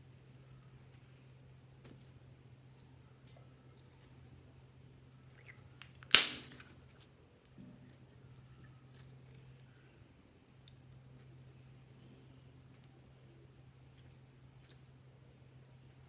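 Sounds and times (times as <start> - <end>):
sharp loud snap: 6.0 - 6.7.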